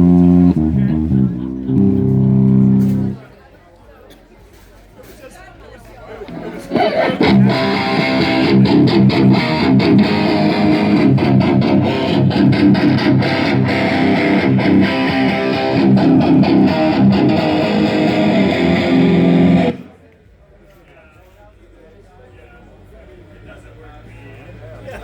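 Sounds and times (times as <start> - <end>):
distorted electric guitar riffing: 0.0 - 3.2, 6.6 - 19.9.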